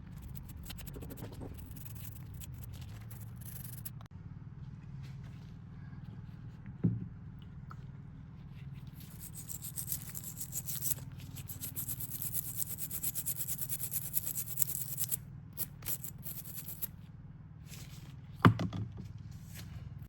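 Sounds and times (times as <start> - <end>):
brush scrubbing metal: 0.0 - 4.1, 8.8 - 16.9.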